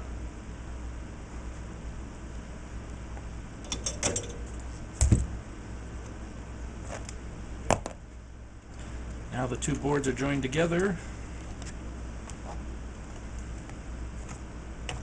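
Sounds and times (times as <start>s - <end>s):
steady low hum: 0.0s - 15.0s
parts clicking and rattling: 3.6s - 5.3s
loud thump: 5.0s - 5.4s.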